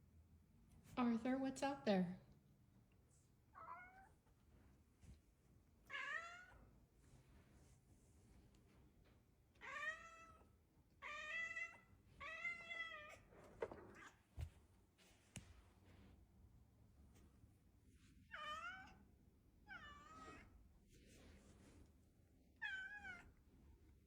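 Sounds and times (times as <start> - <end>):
cat meowing: 3.6 - 4.1, 5.9 - 6.6, 9.6 - 13.3, 18.3 - 19.0, 22.6 - 23.3.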